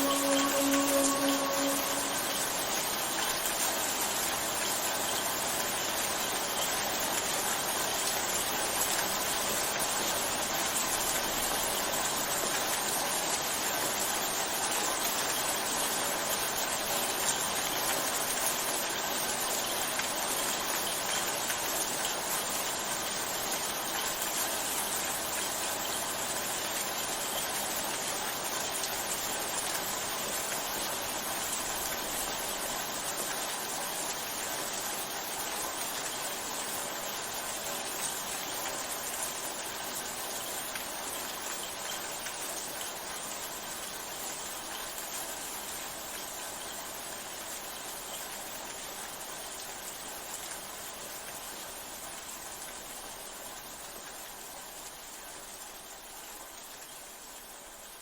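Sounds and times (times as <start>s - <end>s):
waterfall rushing: 0.0s - 3.2s.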